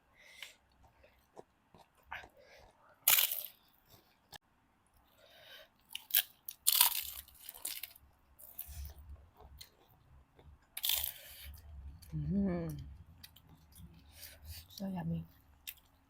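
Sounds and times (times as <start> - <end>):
crunchy food being chewed: 0.3 - 4.4, 5.8 - 11.7.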